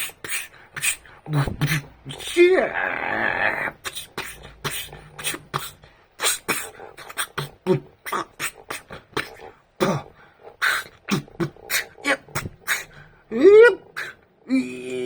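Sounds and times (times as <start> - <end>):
beatboxing hits and clicks: 0.0 - 2.2.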